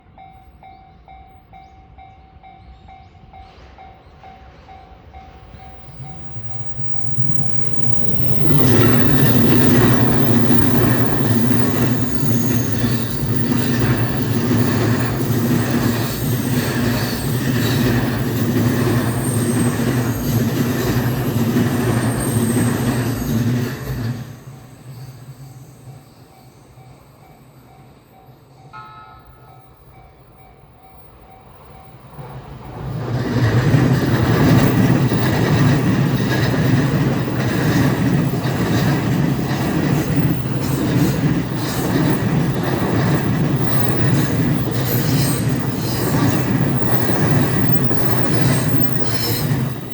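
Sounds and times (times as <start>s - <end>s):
wheels clattering over rail joints: 5.8s - 24.5s, 32.7s - 49.9s.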